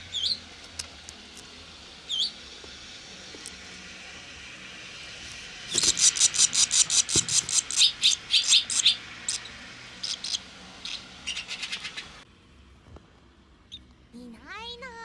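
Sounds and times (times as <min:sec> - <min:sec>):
nestlings chirping: 0:00.1 - 0:00.4, 0:02.1 - 0:02.4, 0:05.7 - 0:12.2.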